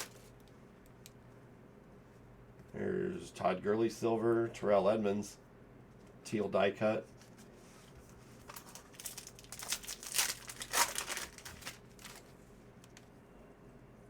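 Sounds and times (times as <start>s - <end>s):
plastic foil wrapper crinkling: 0.0s - 0.5s, 8.4s - 13.0s.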